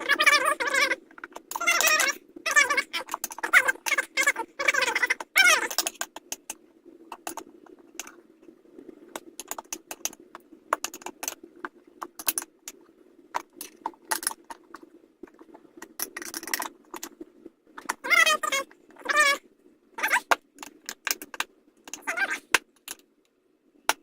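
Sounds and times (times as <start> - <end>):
rubber squeak: 0.0 - 5.9, 17.9 - 19.4, 20.0 - 20.3, 22.0 - 22.5.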